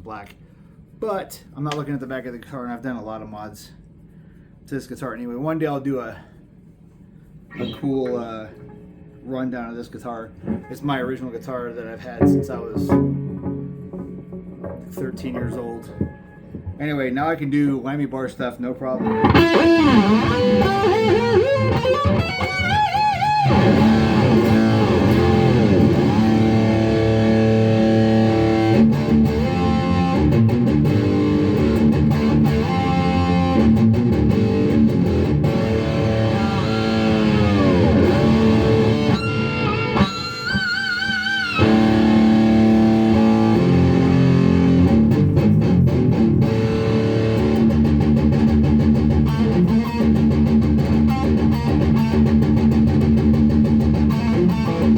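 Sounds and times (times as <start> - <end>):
electric guitar with whammy bar dives: 12.2 - 16.9, 19.0 - 54.9.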